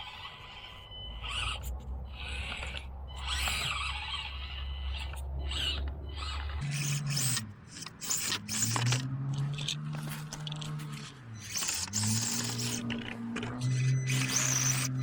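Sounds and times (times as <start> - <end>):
scraping and clicking noises: 5.0 - 15.0.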